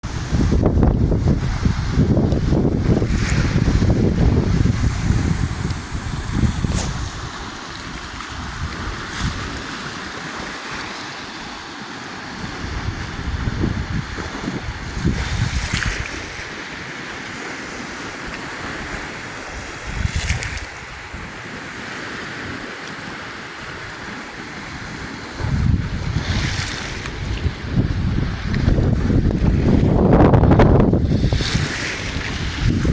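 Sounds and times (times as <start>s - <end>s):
wind buffeting microphone: 0.0s - 10.5s, 12.4s - 16.6s, 18.2s - 21.4s, 24.6s - 32.9s
lake waves splashing: 0.0s - 32.9s.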